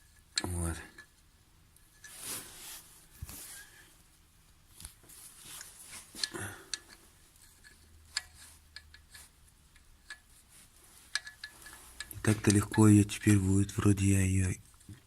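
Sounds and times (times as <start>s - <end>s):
metal clicks and scraping: 5.6s - 10.4s, 11.0s - 13.8s.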